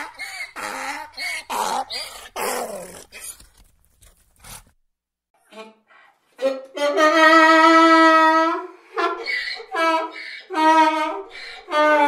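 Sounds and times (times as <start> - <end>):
donkey braying: 6.4 - 12.0.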